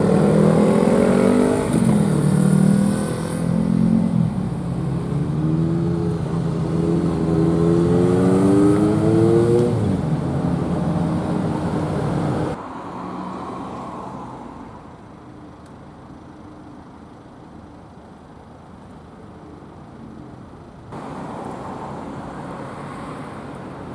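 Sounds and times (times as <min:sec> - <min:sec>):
vehicle engine accelerating hard: 0:00.0 - 0:12.6
steady road noise: 0:00.0 - 0:23.9.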